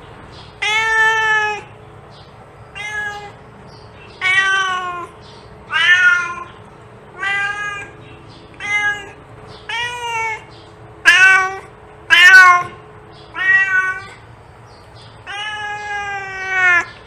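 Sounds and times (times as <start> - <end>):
cat meowing: 0.6 - 1.7, 2.7 - 3.4, 4.1 - 8.0, 8.6 - 14.3, 15.2 - 17.0.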